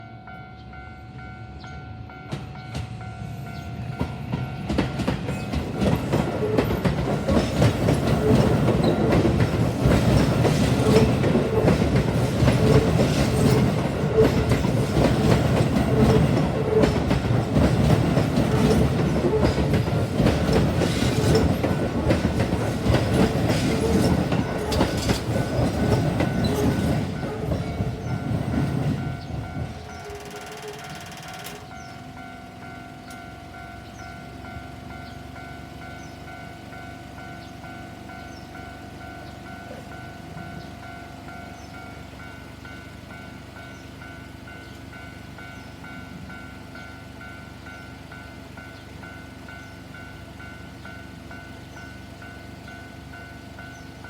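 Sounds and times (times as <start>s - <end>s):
train rumble and wheel clatter: 0.0s - 54.0s
level crossing alarm bell ringing: 24.4s - 42.0s.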